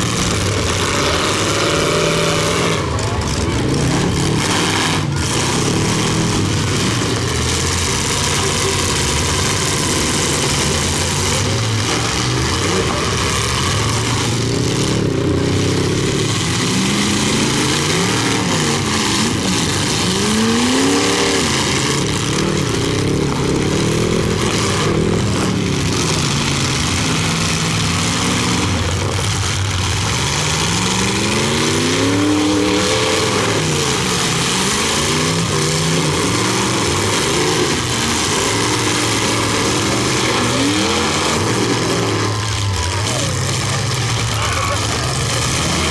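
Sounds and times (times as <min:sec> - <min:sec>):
car engines revving: 0:00.0 - 0:45.9.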